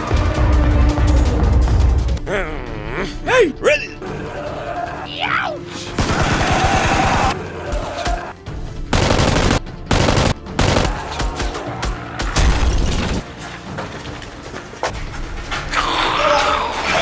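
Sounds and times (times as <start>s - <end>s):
background music: 0.0s - 17.0s
automatic gunfire bursts: 8.9s - 11.0s.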